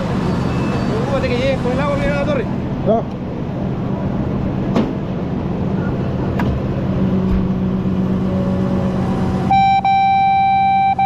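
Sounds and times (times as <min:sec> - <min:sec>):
vehicle engine humming: 0:00.0 - 0:11.0
high electronic tone: 0:09.5 - 0:11.0.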